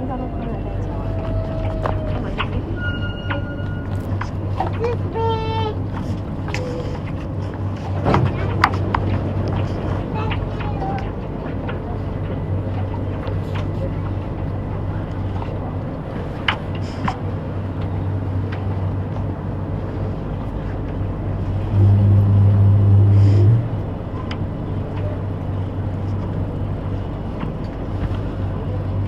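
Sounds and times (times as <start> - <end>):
train electrical hum: 0.0 - 29.0
loud low buzz: 21.4 - 24.8.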